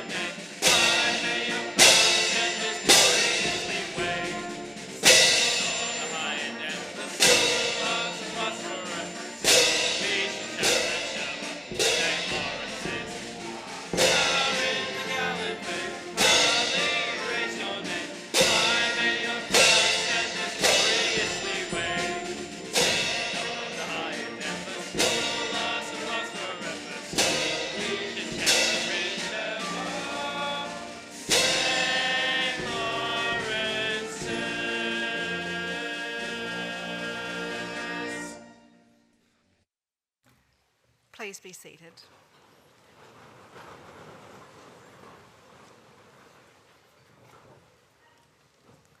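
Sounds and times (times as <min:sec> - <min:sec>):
choir singing with instruments: 0:00.0 - 0:38.6.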